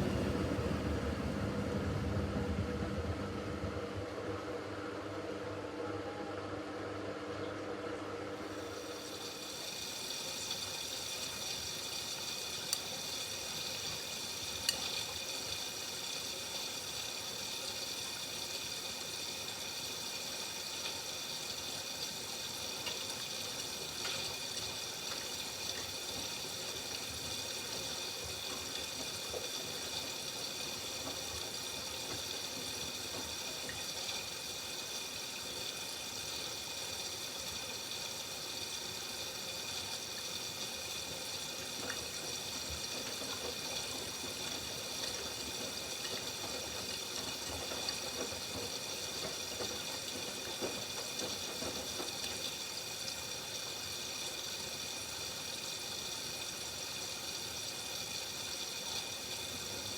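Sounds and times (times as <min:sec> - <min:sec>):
washing machine filling with water: 0:00.0 - 0:59.9.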